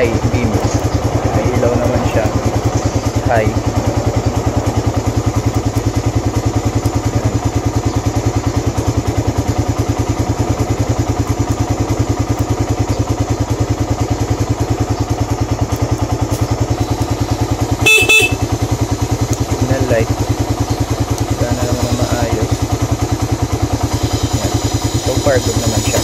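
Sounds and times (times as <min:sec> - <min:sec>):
motorcycle engine idling: 0:00.0 - 0:26.0
horn beep: 0:17.8 - 0:18.8.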